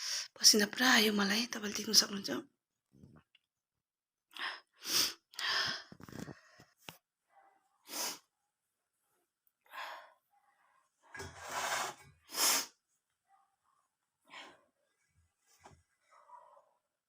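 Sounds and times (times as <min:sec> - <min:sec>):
person breathing hard and sniffing: 0:04.4 - 0:06.8, 0:07.9 - 0:08.3, 0:11.5 - 0:12.8.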